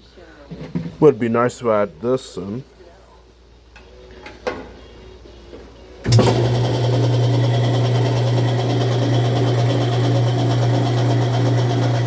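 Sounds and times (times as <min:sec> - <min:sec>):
washer motor jolting on: 0:06.1 - 0:12.0
washer spinning with hum: 0:06.1 - 0:12.0.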